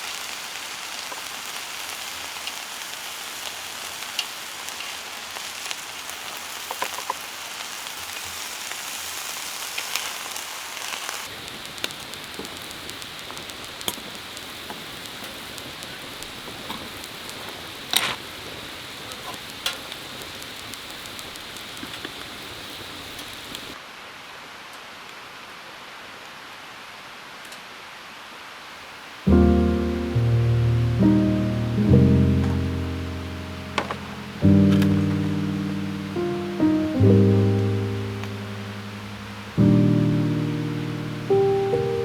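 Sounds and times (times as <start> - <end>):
steady rain: 0.0 - 42.0
guitar music: 29.3 - 42.0
raindrops ticking: 29.3 - 42.0.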